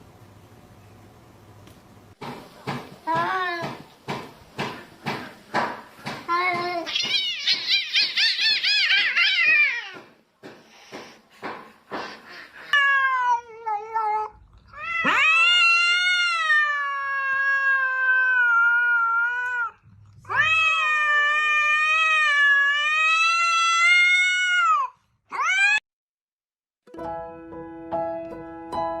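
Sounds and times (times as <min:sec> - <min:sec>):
cat yowling: 0:06.8 - 0:10.0, 0:12.7 - 0:25.8.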